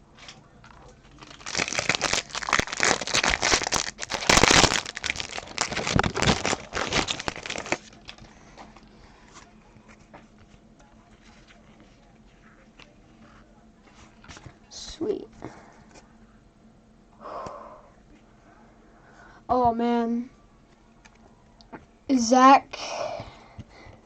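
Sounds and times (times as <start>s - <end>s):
card pack wrapper tearing: 1.2s - 8.2s.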